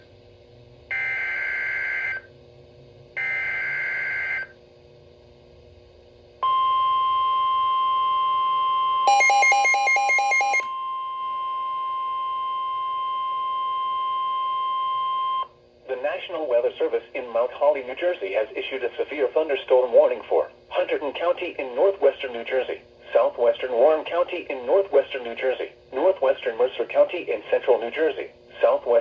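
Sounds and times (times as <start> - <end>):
steady alarm tone: 0.9 - 2.3, 3.2 - 4.5, 6.4 - 15.5
rapid pulsing beep: 9.1 - 10.7.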